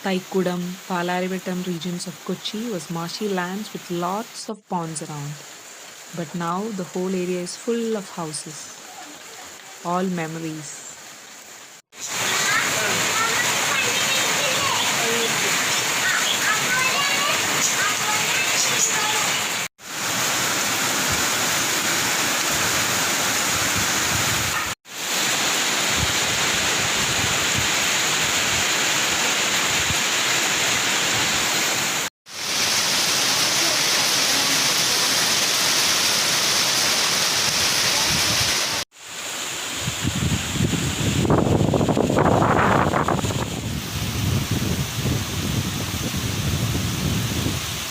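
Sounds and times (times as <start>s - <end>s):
rain falling: 0.0s - 47.9s.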